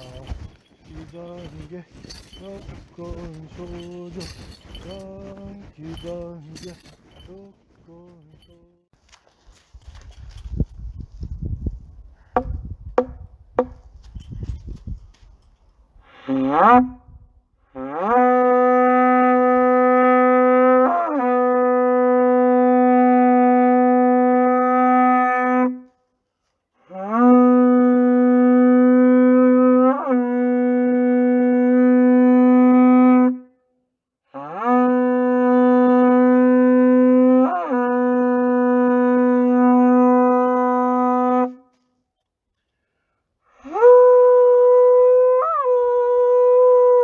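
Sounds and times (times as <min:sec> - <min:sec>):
conch-shell trumpet blasts: 0:34.5 - 0:41.7.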